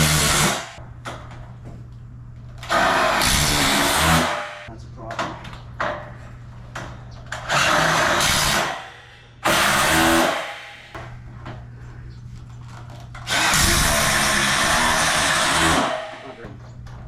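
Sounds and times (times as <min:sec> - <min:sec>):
power drill running: 0:00.0 - 0:00.8, 0:02.6 - 0:04.6, 0:07.4 - 0:08.8, 0:09.4 - 0:10.8, 0:13.2 - 0:16.3.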